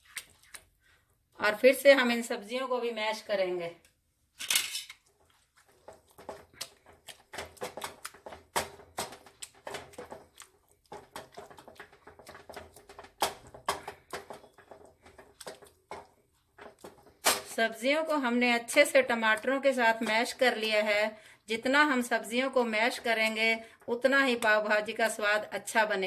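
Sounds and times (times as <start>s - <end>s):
masher squelching vegetables: 5.0s - 20.9s.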